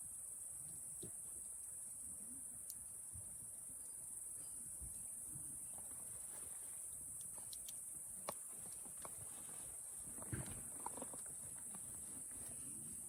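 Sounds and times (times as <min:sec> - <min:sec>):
crickets chirring: 0:00.0 - 0:13.0.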